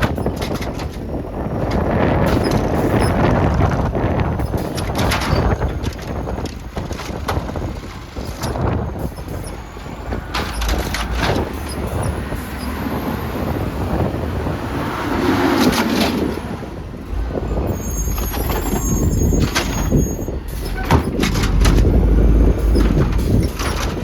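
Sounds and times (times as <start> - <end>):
garbage truck running: 0.0 - 24.0
wind buffeting microphone: 0.0 - 24.0
metallic clanks: 18.1 - 24.0.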